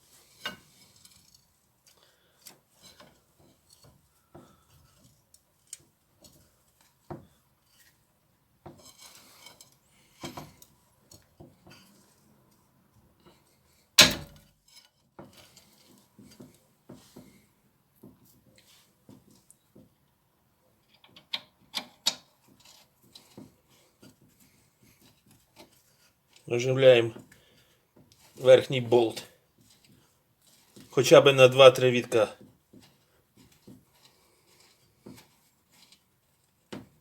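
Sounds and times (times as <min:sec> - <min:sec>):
loud metal knock: 0:14.0 - 0:14.4.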